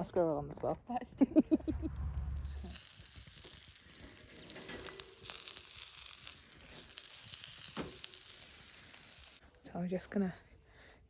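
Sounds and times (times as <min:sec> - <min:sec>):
faint sizzling with crackles: 0:02.2 - 0:10.2.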